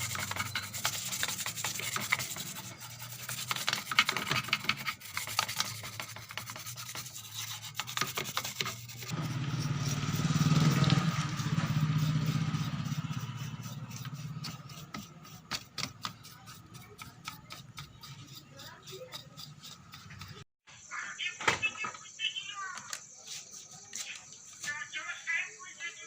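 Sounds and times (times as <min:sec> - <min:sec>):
brush scrubbing circuit board: 0:00.0 - 0:20.5.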